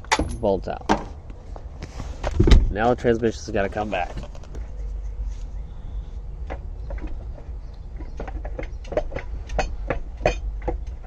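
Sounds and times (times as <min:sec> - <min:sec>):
metal knocks and clinks: 0:00.0 - 0:01.2, 0:08.0 - 0:11.0.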